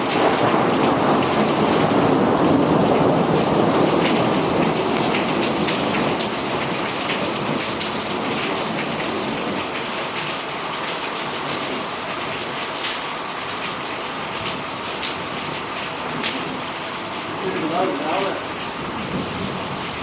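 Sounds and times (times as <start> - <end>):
low thunder rumble: 0.0 - 10.1, 14.4 - 20.0
torrential rain pouring: 0.0 - 20.0.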